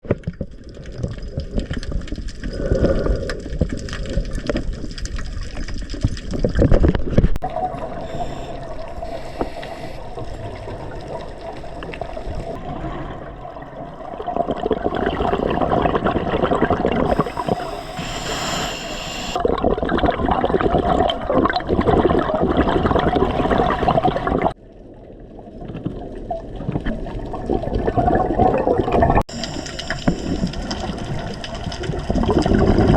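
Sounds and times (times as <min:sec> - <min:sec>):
exhaled air bubbling: 0:00.5 - 0:24.6, 0:25.2 - 0:32.9
diver breathing through regulator: 0:07.9 - 0:10.4, 0:17.1 - 0:19.4.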